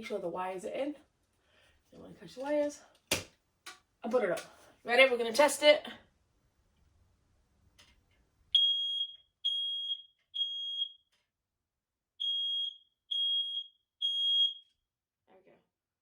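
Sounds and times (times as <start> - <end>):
smoke alarm beeping: 8.6 - 11.1, 12.2 - 14.8.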